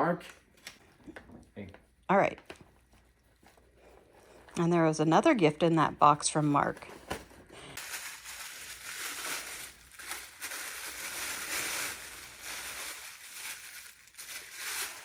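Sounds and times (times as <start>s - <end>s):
packaging rustling and crinkling: 6.7s - 15.0s.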